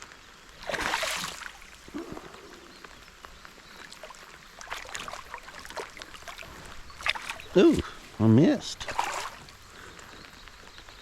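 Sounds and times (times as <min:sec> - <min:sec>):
water dripping: 0:00.4 - 0:11.0
water splash: 0:00.6 - 0:02.7, 0:03.8 - 0:07.9, 0:08.7 - 0:09.6.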